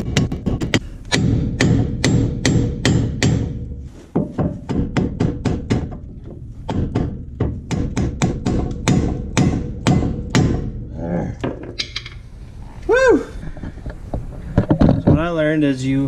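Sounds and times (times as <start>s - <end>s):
hammer striking steel: 0.0s - 6.1s, 6.7s - 10.9s.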